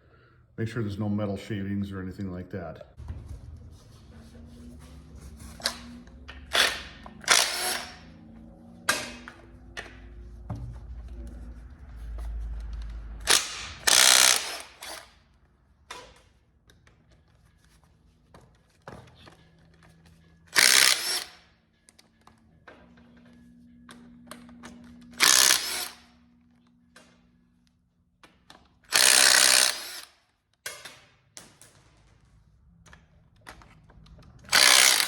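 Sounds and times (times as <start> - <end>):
power tool spinning bolts: 5.6 - 8.2, 13.2 - 15.2, 20.5 - 21.4, 24.7 - 26.2, 28.9 - 30.2, 34.4 - 35.0.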